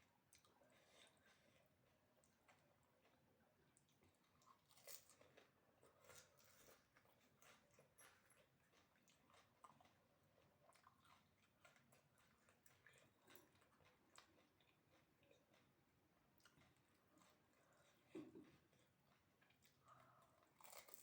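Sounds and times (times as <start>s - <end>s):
crisp chewing crunches: 18.7s - 21.0s.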